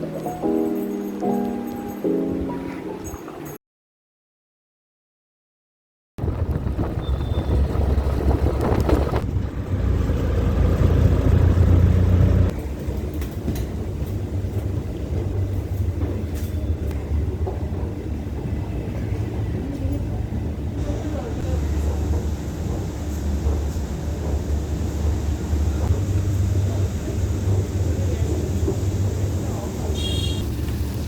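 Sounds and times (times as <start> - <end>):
vehicle road noise rumble: 6.2 - 18.0, 18.6 - 31.0.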